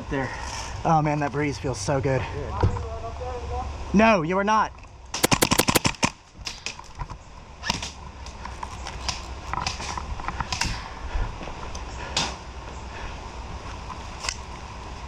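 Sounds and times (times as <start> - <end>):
airsoft guns firing: 5.2 - 5.9.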